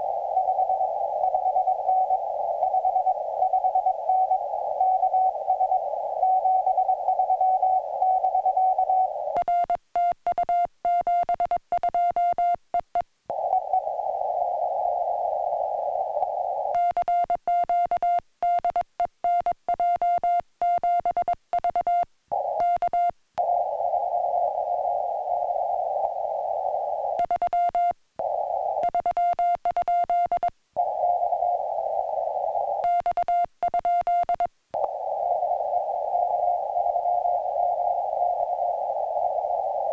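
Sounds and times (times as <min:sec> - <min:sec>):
receiver hiss: 0:00.0 - 0:39.9
morse code tone: 0:06.3 - 0:13.0, 0:16.8 - 0:23.1, 0:28.8 - 0:30.5, 0:32.8 - 0:34.5.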